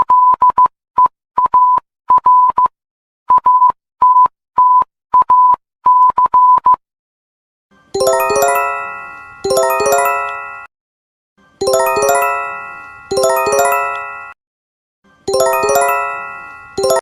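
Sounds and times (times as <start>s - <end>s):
electronic alert chime: 8.0s - 10.7s, 11.6s - 14.4s, 15.3s - 17.0s.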